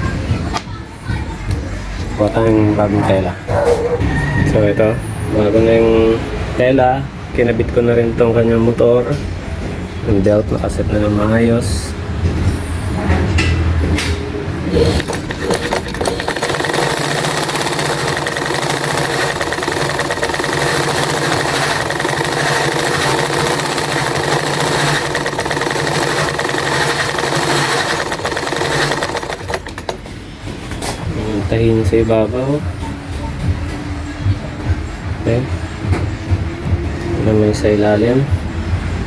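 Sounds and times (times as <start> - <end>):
electric sewing machine stitching: 14.7 - 30.0.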